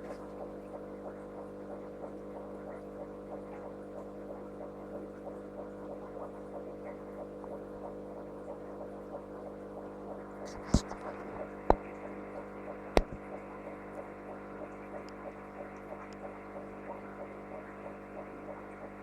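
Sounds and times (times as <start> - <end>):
aquarium pump humming: 12.6 - 13.4.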